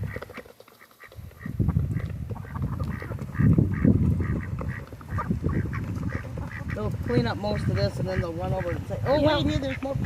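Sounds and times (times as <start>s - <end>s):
poultry honking: 2.4s - 9.8s.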